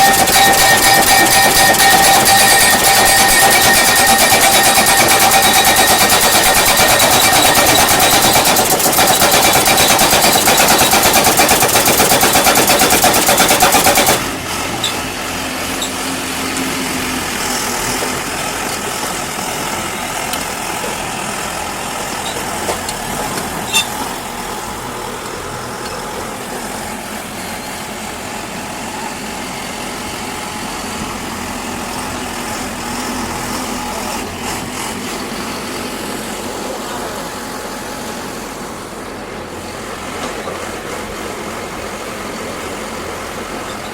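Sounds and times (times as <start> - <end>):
pile driver hammering: 0.0 - 14.5
engine idling: 0.0 - 14.7.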